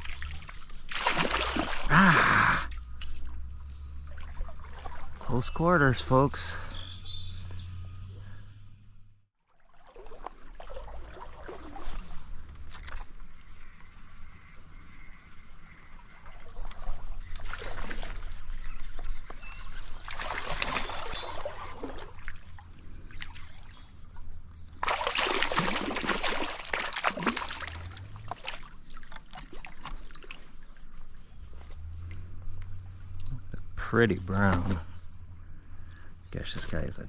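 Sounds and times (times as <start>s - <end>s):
fish splashing water: 0.0s - 2.2s, 3.2s - 5.4s, 9.5s - 13.2s, 16.1s - 32.2s
low steady rumble: 2.1s - 5.2s.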